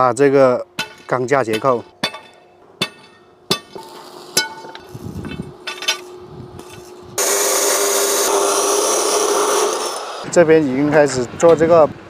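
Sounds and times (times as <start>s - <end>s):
steel pipes clanking: 0.7s - 10.2s
power tool hissing and humming: 3.8s - 10.3s.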